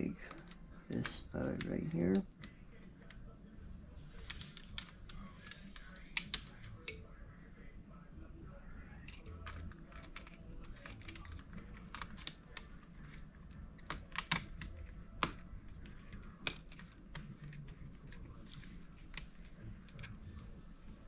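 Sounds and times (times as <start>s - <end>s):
small parts clicking and tapping: 4.2s - 7.0s, 9.0s - 20.2s.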